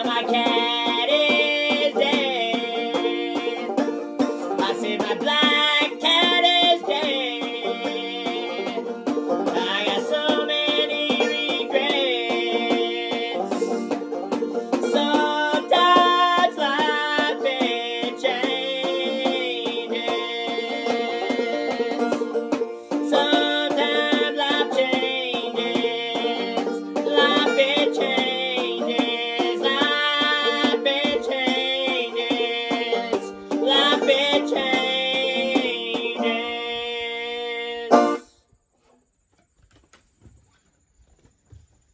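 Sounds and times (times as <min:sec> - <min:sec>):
banjo picking and strumming: 0:00.0 - 0:38.4.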